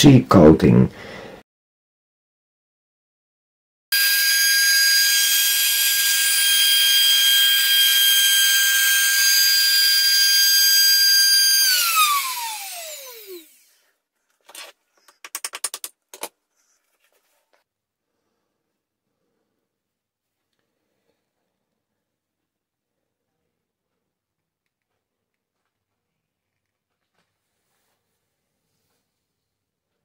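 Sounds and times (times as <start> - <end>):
trim router whining: 4.0 - 13.8.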